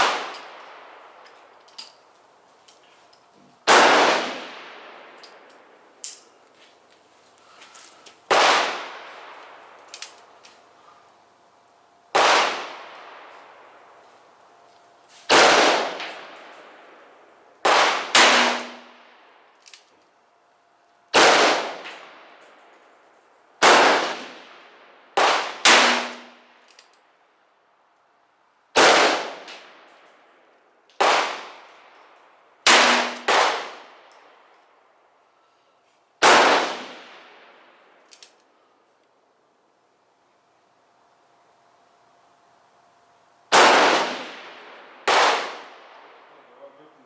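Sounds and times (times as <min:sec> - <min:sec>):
gunshots echoing: 0:00.0 - 0:01.1, 0:03.7 - 0:05.2, 0:08.3 - 0:09.6, 0:12.1 - 0:13.3, 0:15.3 - 0:16.6, 0:17.6 - 0:19.0, 0:21.1 - 0:22.1, 0:23.6 - 0:24.6, 0:25.2 - 0:26.4, 0:28.8 - 0:29.6, 0:31.0 - 0:31.6, 0:32.7 - 0:33.9, 0:36.2 - 0:37.2, 0:43.5 - 0:46.3.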